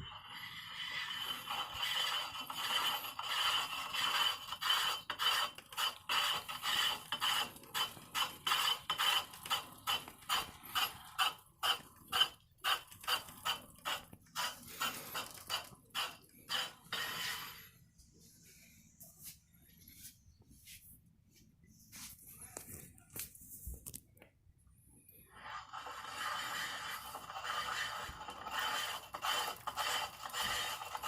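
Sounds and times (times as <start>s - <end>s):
bike trainer scraping and grinding: 0.0s - 18.3s, 25.3s - 31.0s.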